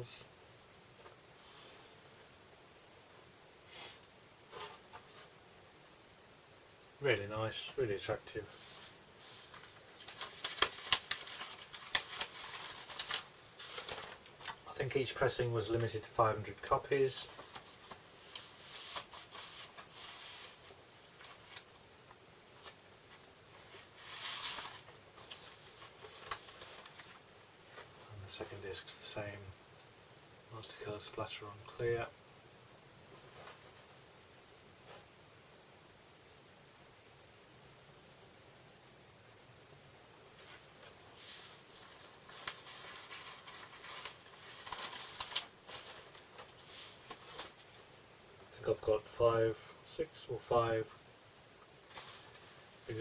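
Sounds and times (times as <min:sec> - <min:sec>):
vinyl record sleeve rustling: 0:03.7 - 0:05.4, 0:07.5 - 0:28.9, 0:33.1 - 0:34.0, 0:34.8 - 0:35.2, 0:40.3 - 0:49.0, 0:51.6 - 0:53.0.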